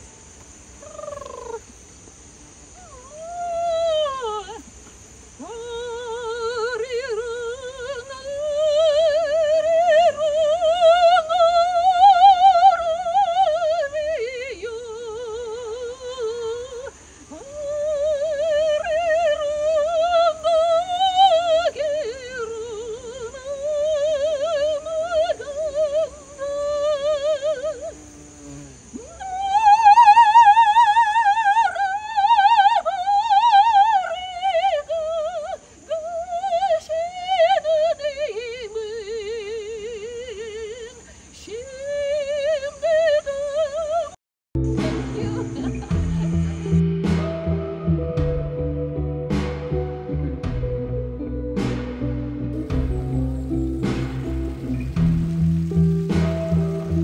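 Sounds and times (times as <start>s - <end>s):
slow melody with vibrato: 44.6s - 57.0s.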